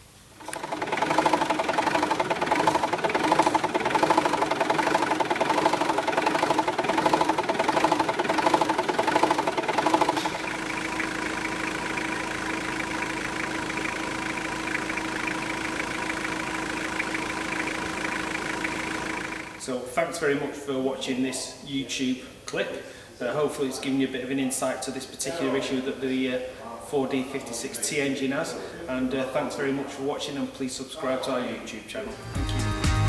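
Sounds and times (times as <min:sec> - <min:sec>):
diesel engine clattering and idling: 0:00.4 - 0:19.6.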